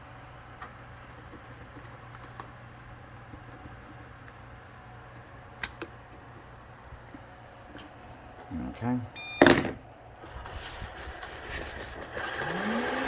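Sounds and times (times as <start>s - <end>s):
low steady hum: 0.0s - 11.4s.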